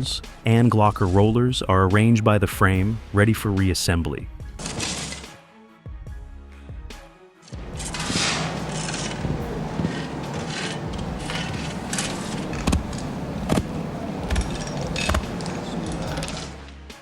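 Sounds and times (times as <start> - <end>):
metal parts scraping and rattling: 4.6 - 5.3, 7.5 - 16.8
sharp knocks: 7.6 - 16.6.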